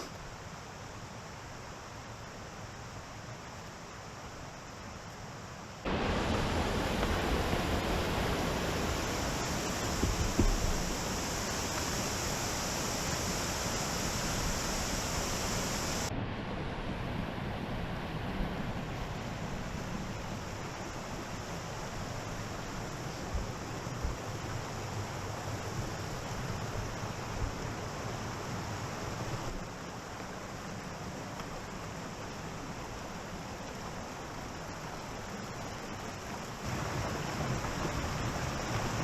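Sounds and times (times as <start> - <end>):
waterfall rushing: 5.8 - 16.1, 18.7 - 39.0.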